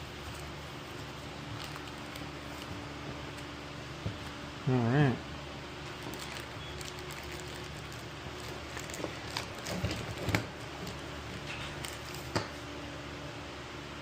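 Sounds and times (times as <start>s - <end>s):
parts and packaging handled: 0.0s - 4.4s, 5.8s - 12.6s
steady low hum: 0.0s - 14.0s.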